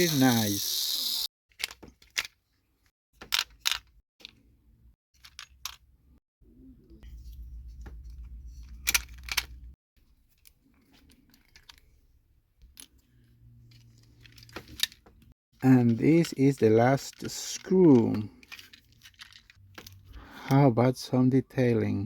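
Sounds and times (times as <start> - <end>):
toy parts clicking and clinking: 0.0 - 2.4, 3.2 - 4.4, 5.2 - 5.8, 8.6 - 9.7, 10.4 - 12.0, 13.7 - 15.0, 15.7 - 20.0.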